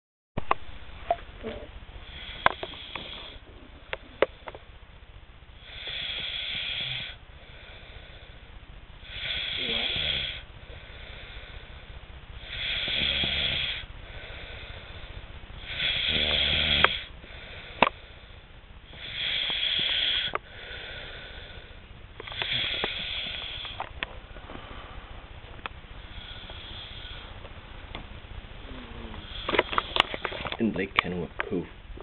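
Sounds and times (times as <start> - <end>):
quiet breathing: 1.4 - 4.8, 5.5 - 28.0, 28.6 - 31.8
person snoring loudly: 5.6 - 7.6, 9.0 - 10.4, 12.4 - 14.8, 15.6 - 17.8, 19.0 - 21.6, 22.3 - 23.8, 28.6 - 29.8.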